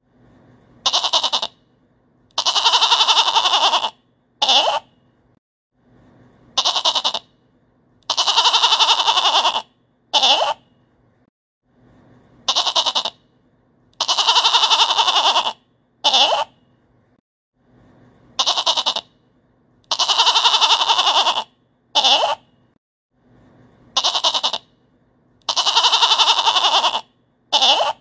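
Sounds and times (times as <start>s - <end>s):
goat bleating: 0.8s - 1.6s, 2.4s - 4.8s, 6.6s - 7.2s, 8.1s - 10.6s, 12.5s - 13.2s, 14.0s - 16.5s, 18.4s - 19.1s, 19.9s - 22.4s, 24.0s - 24.6s, 25.5s - 28.0s.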